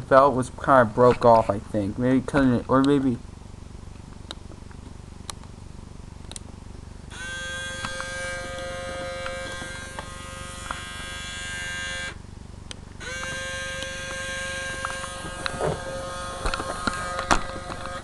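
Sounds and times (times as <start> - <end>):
small electric motor whirring: 7.1 - 12.2, 13.0 - 18.0.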